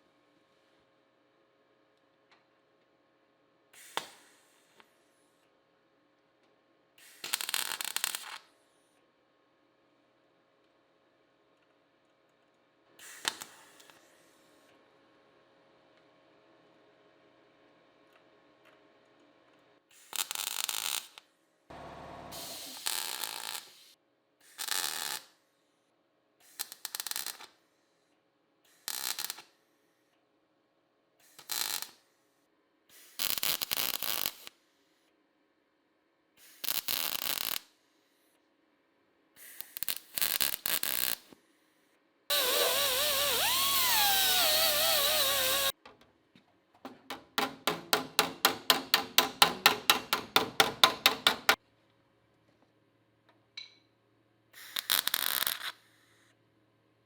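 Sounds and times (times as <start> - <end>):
welding bursts: 7.1 - 8.3, 21.8 - 23.9, 39.6 - 41.2, 42.3 - 45.8, 54.6 - 55.8.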